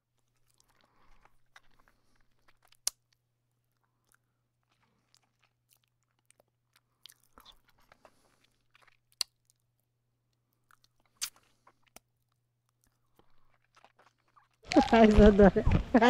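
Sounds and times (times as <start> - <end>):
bonfire crackling: 14.6 - 16.0.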